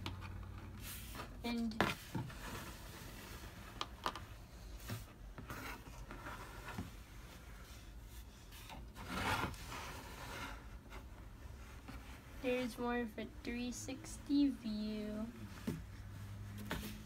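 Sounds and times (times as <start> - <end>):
soft rubbing on plastic: 4.6 - 17.0
plastic scrape: 8.7 - 11.1.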